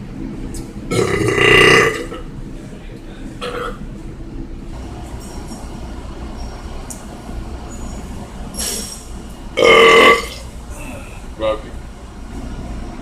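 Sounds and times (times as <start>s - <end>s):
loud burp: 0.9s - 2.3s, 9.6s - 10.5s.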